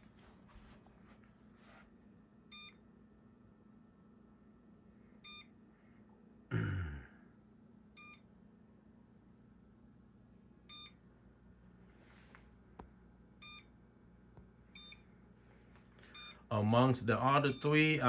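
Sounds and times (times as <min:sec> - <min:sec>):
short high electronic beeps: 0:14.8 - 0:15.0, 0:16.2 - 0:16.4.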